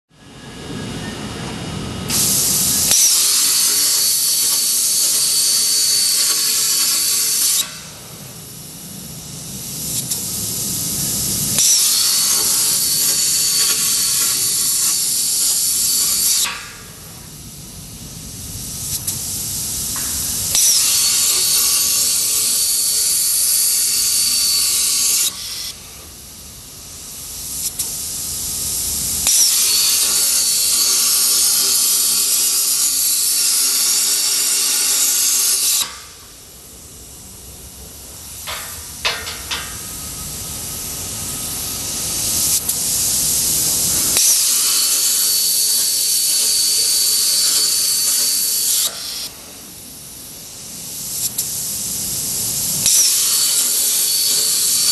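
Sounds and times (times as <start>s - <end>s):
plasma cutter arc hissing: 2.0s - 54.9s.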